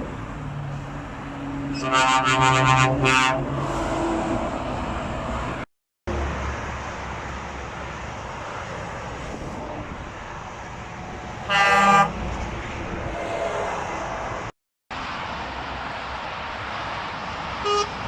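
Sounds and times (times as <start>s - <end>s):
road traffic: 0.0s - 18.0s
truck air horn blast: 1.7s - 3.8s, 11.5s - 12.2s, 17.6s - 18.0s.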